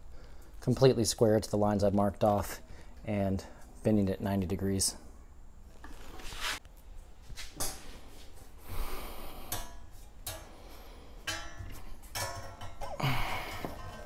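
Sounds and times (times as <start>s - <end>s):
scraping rustle: 5.8s - 6.7s
metal knocks and clinks: 11.2s - 14.0s.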